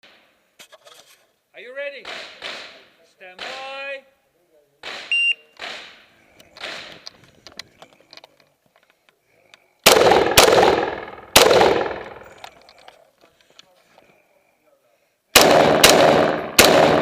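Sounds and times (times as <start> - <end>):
rifle shots with ringing tail: 9.8 - 12.4, 15.4 - 17.0.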